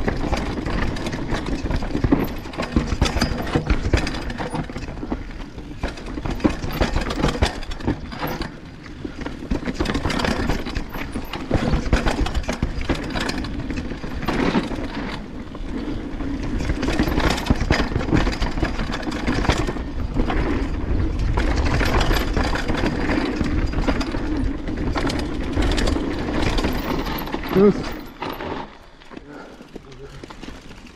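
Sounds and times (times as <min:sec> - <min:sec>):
tyres rumbling over ground: 0:00.0 - 0:30.9
chain rattling: 0:21.3 - 0:28.7.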